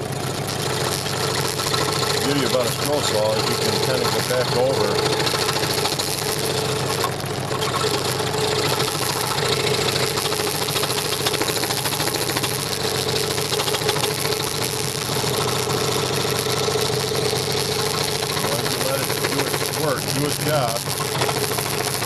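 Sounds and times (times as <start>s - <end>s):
scroll saw cutting: 0.0s - 22.0s.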